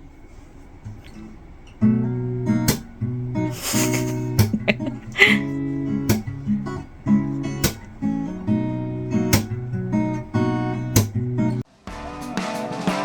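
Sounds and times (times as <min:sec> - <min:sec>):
acoustic guitar strumming: 0:00.0 - 0:13.0
steady beat: 0:02.6 - 0:11.6.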